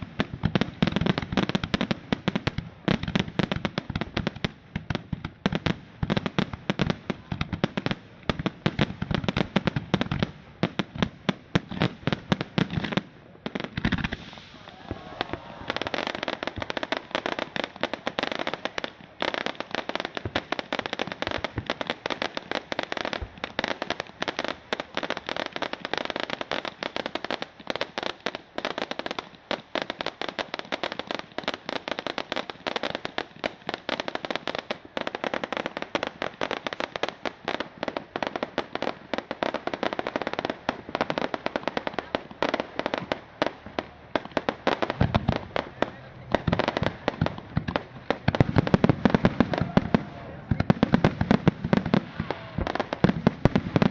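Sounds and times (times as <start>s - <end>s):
fireworks crackling and popping: 0.0s - 53.9s
deep firework booms: 13.7s - 20.4s, 43.0s - 53.9s.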